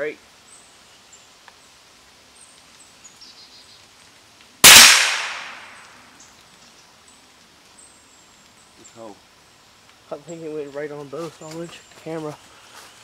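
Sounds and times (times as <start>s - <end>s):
rifle shot with echo: 4.6s - 6.0s.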